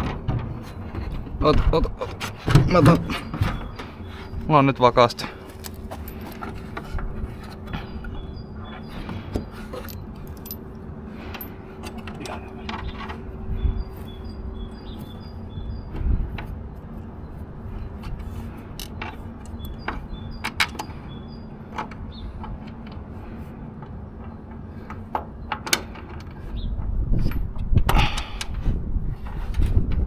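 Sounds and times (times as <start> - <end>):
steady low hum: 0.4 - 30.0
metal tools clinking and rattling: 5.2 - 7.8, 9.0 - 13.2, 18.2 - 19.9.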